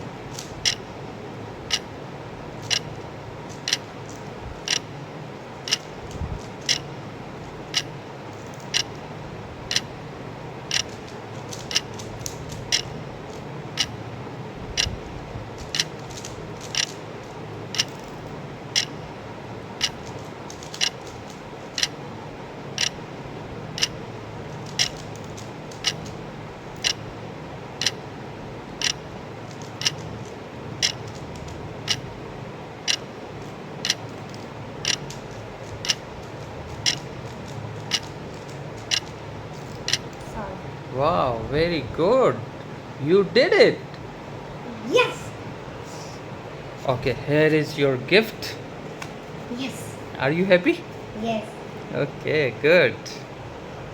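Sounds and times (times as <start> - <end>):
low steady hum: 0.0 - 53.9
clock ticking: 1.7 - 1.9, 2.6 - 3.0, 3.6 - 3.9, 4.6 - 4.9, 5.7 - 5.9, 6.6 - 6.9, 7.7 - 8.0, 8.7 - 9.0, 9.7 - 9.9, 10.7 - 11.0, 11.6 - 11.9, 12.7 - 12.9, 13.8 - 14.0, 14.8 - 15.0, 16.7 - 17.0, 17.7 - 18.0, 18.8 - 19.0, 19.8 - 20.0, 20.8 - 21.0, 21.8 - 22.0, 22.8 - 23.0, 26.8 - 27.0, 28.8 - 29.0, 30.8 - 31.0, 31.8 - 32.1, 32.8 - 33.1, 33.8 - 34.2, 34.8 - 35.2, 36.8 - 37.1, 38.9 - 39.1, 39.8 - 40.1.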